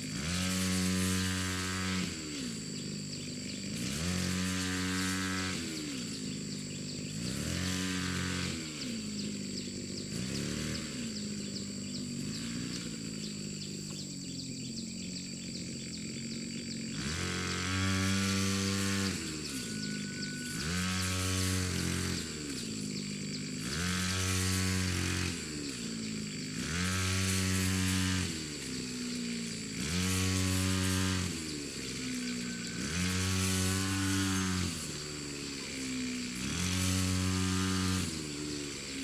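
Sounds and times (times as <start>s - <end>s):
small engine revving under load: 0.0s - 39.0s.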